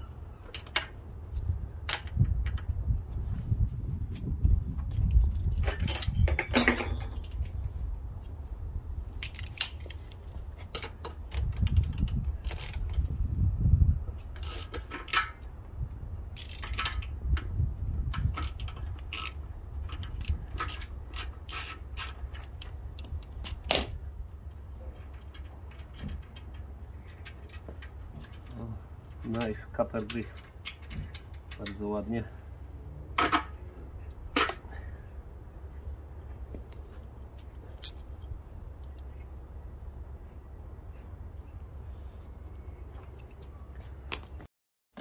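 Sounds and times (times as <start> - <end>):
tools and metal parts scraping: 5.2 - 7.6, 14.3 - 15.5, 18.1 - 24.0, 24.7 - 32.3
metallic jangle: 5.8 - 7.4.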